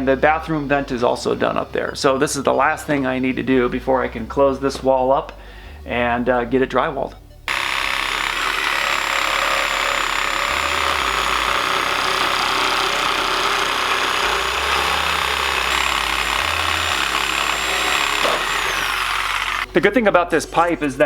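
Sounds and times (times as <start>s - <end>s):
power tool motor whine: 7.5s - 19.7s.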